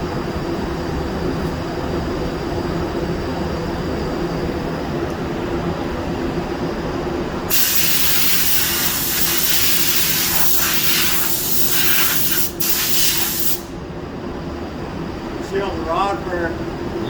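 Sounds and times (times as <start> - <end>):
low shop hum: 0.0 - 17.0
compressed air hissing: 7.5 - 13.8.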